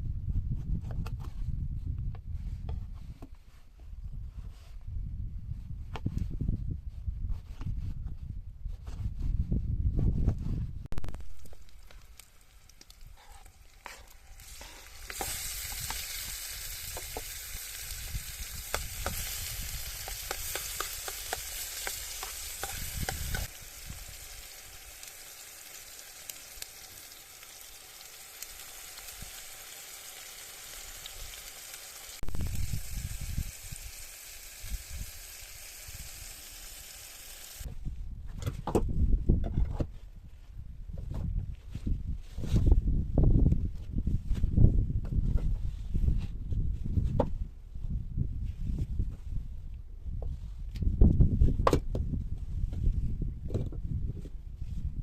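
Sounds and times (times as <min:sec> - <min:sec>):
crackling pops: 0:10.9 - 0:34.0
food sizzling in a pan: 0:11.1 - 0:37.7.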